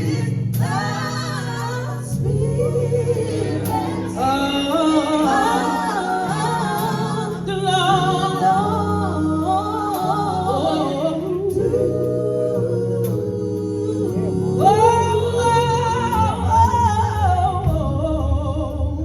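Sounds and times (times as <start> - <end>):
woman singing gospel: 0.0 - 19.0.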